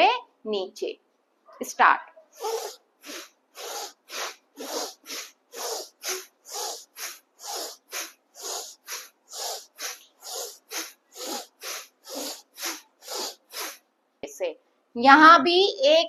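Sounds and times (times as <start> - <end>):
forceful nasal breathing: 2.3 - 13.9.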